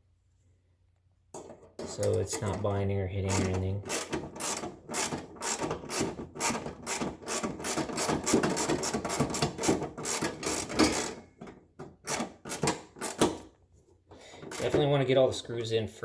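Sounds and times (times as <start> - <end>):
hand screwdriver rasping clicks: 14.4 - 14.8.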